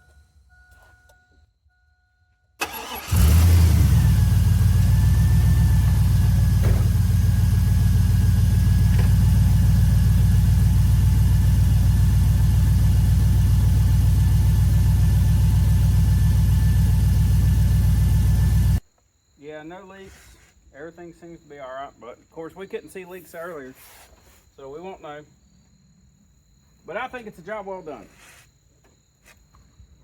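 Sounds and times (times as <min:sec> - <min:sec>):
engine cranking and idling: 0:02.6 - 0:18.8
engine whine: 0:02.6 - 0:18.8.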